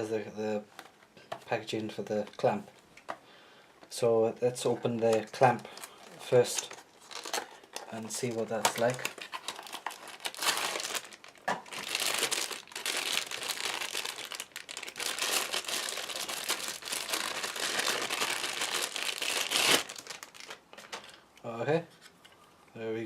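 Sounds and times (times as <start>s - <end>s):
plastic packaging crinkling: 4.9s - 21.2s.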